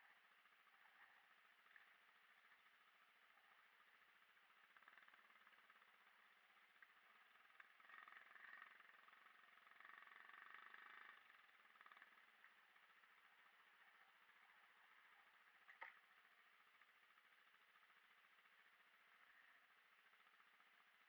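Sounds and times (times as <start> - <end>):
faint motorcycle engine: 0.0 - 21.0.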